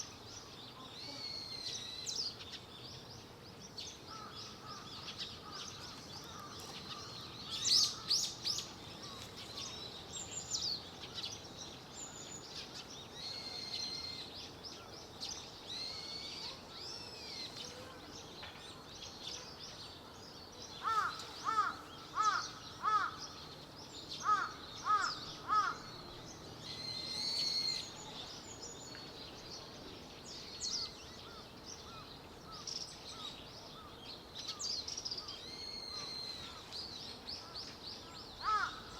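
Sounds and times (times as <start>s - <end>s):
birds chirping: 0.0s - 38.9s
steady background hiss: 0.0s - 38.9s
harsh arched bird calls: 4.1s - 11.4s, 20.8s - 23.6s, 24.2s - 28.7s, 30.4s - 38.9s.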